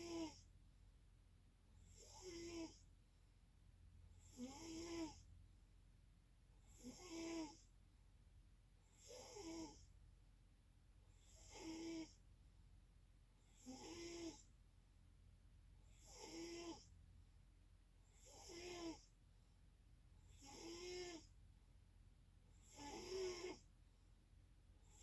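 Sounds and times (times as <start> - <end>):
faint snoring: 0.0 - 0.5, 1.8 - 2.8, 4.1 - 5.3, 6.6 - 7.7, 8.9 - 9.9, 11.1 - 12.2, 13.5 - 14.5, 15.8 - 16.9, 18.1 - 19.1, 20.2 - 21.4, 22.5 - 23.7.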